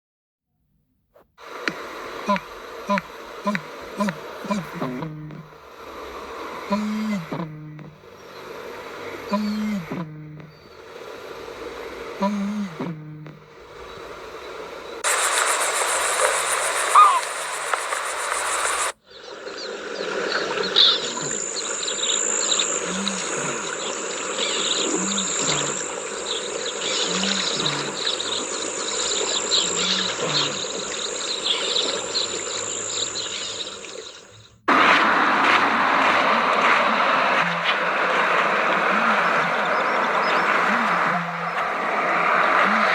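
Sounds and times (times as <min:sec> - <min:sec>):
crickets and insects chirping: 0:01.4 - 0:42.9
soft low pulses: 0:01.4 - 0:42.9
rushing noise: 0:13.6 - 0:19.0, 0:34.7 - 0:40.5.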